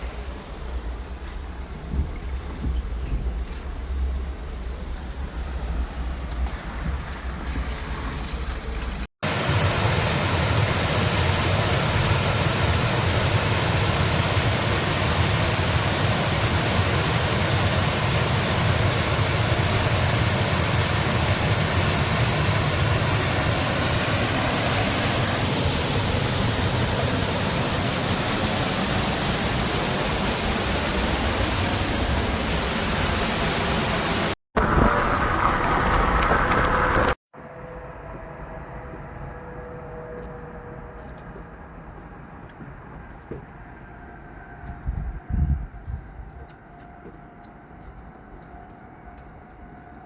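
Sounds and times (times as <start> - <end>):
loud rushing noise: 9.2 - 37.2.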